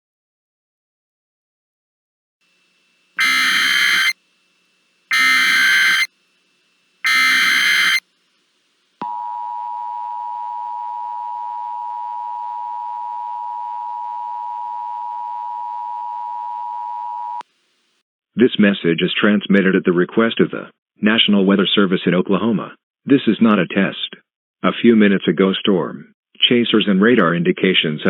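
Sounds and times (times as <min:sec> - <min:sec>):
digital data squawk: 0:03.2 - 0:04.2, 0:05.1 - 0:06.1, 0:07.0 - 0:08.0
two-tone attention signal: 0:03.2 - 0:04.2, 0:05.1 - 0:06.1, 0:07.0 - 0:08.0.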